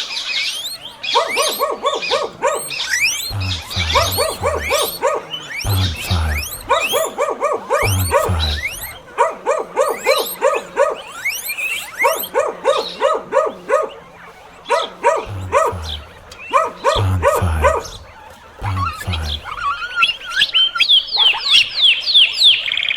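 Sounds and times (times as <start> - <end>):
small dog yapping: 0.6 - 19.6
low thumps: 3.3 - 4.9, 5.6 - 6.8, 7.8 - 9.0, 15.3 - 19.7.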